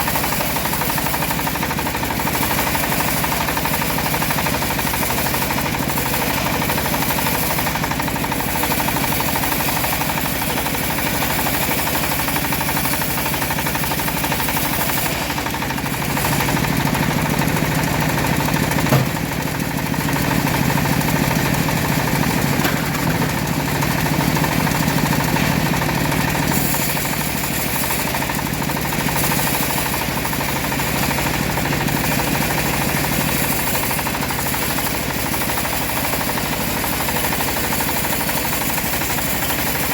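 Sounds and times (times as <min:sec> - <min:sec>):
bandsaw sawmill humming: 0:00.0 - 0:39.9
sharp knock: 0:18.9 - 0:19.3.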